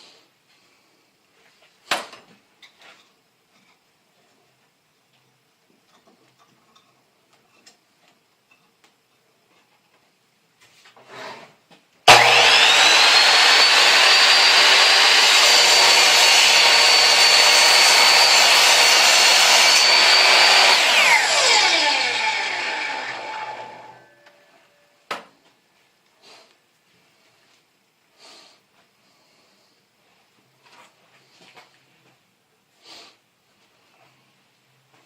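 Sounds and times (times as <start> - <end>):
miter saw cutting wood: 12.1 - 24.5
saw blade spinning down: 12.1 - 24.8.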